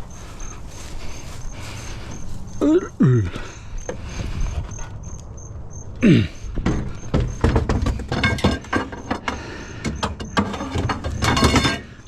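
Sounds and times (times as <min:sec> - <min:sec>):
scrap metal clattering: 0:06.6 - 0:12.0.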